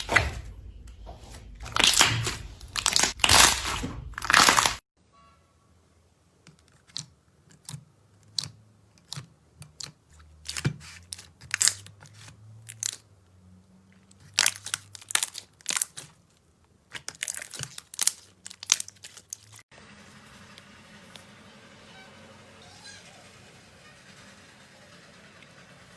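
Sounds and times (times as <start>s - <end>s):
slime squeezed crackling: 1.6s - 4.8s, 14.2s - 16.2s, 16.9s - 19.6s.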